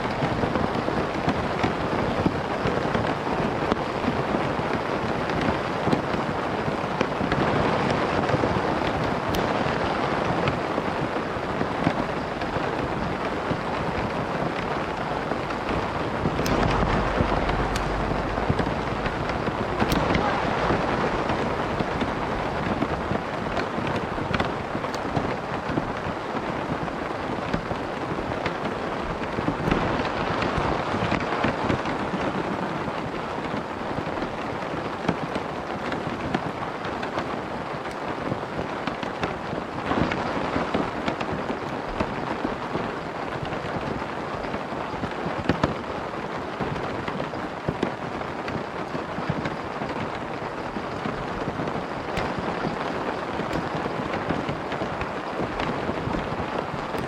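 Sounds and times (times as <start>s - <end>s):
rain patter on tent fabric: 0.0s - 57.0s
low rumble: 12.0s - 23.5s.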